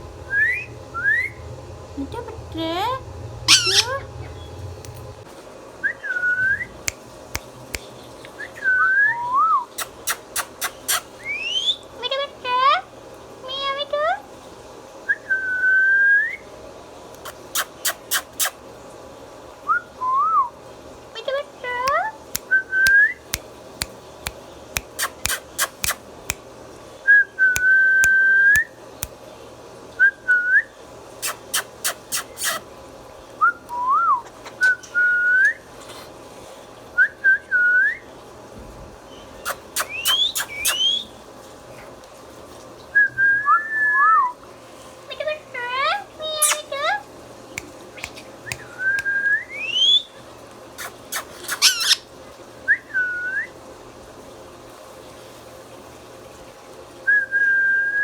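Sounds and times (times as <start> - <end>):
parakeet whistling: 0.3 - 1.4, 3.5 - 4.5, 8.4 - 11.8, 39.4 - 41.1, 48.0 - 50.1, 50.8 - 52.0
parakeet sharp clicks: 6.9 - 8.4, 9.8 - 11.1, 21.9 - 26.4, 27.6 - 29.2, 39.5 - 40.8, 47.6 - 49.1.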